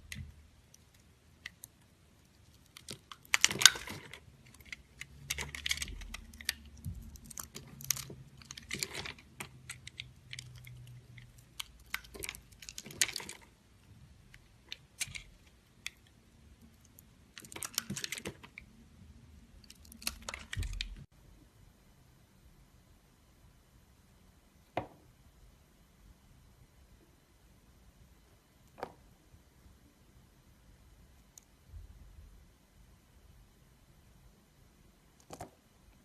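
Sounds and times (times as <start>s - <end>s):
blade cutting soap crackling: 0.0s - 13.6s.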